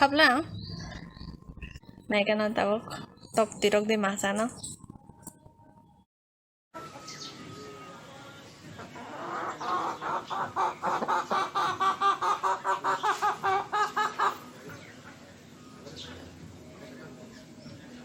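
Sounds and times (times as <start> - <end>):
chicken clucking: 8.7 - 15.2.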